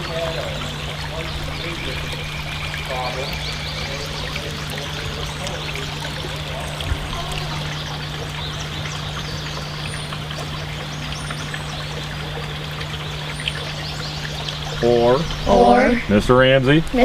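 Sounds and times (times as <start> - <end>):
constant low hum: 0.0 - 17.0
running water: 0.0 - 17.0.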